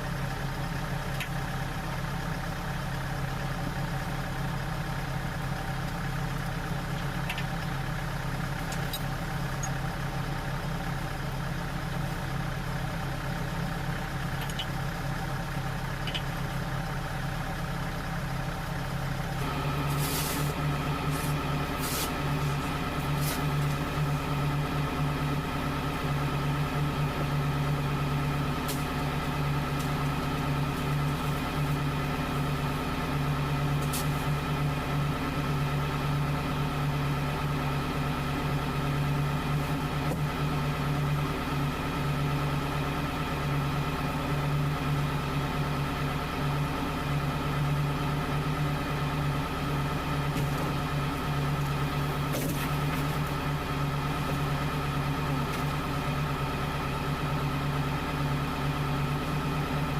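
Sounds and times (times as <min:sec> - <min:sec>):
vehicle engine running: 0:00.0 - 0:59.9.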